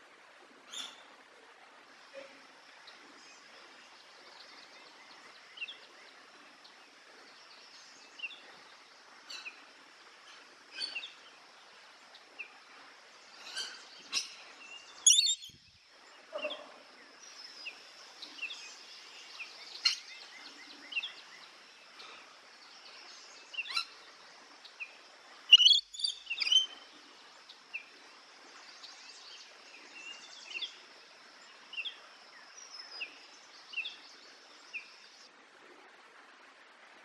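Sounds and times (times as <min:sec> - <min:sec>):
birds chirping: 0:15.1 - 0:15.6, 0:25.5 - 0:26.8.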